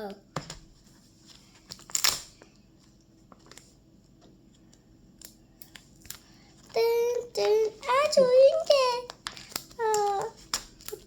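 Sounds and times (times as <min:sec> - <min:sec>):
paper rustling: 0:05.7 - 0:11.0.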